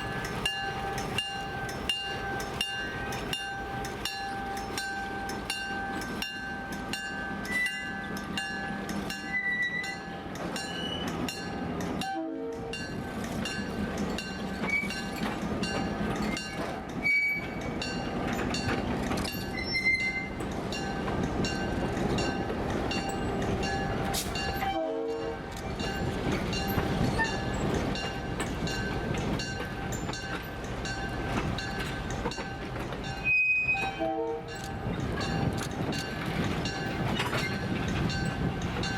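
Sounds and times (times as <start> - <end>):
diesel locomotive engine: 0.0 - 38.9
rail noise: 0.0 - 38.9.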